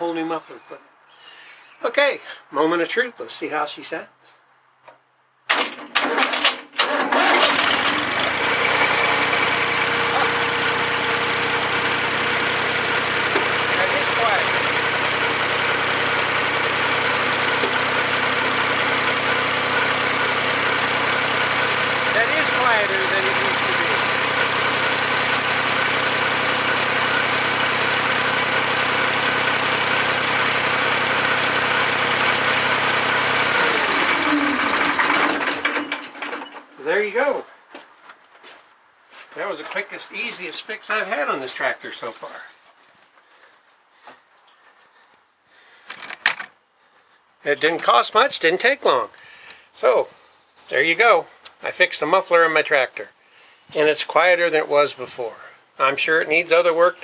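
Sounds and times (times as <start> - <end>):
tractor diesel engine idling: 5.5 - 36.6.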